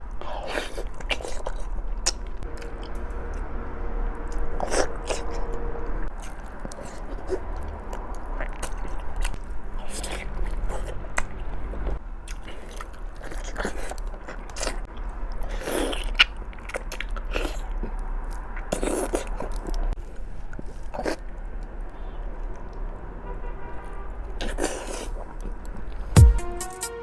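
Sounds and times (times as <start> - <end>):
person chewing crunchy food: 0.0 - 23.0, 24.3 - 26.2
low hum: 2.3 - 6.8
wet mouth clicks: 4.3 - 5.5.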